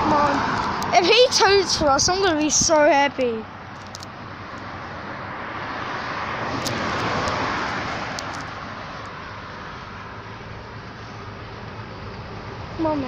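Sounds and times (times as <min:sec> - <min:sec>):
vehicle driving past: 0:04.4 - 0:12.8.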